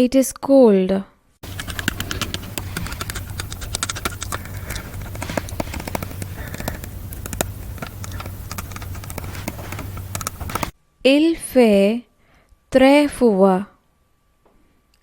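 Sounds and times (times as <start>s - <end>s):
dense irregular clicks: 1.4s - 10.7s
steady low rumble: 1.4s - 10.7s.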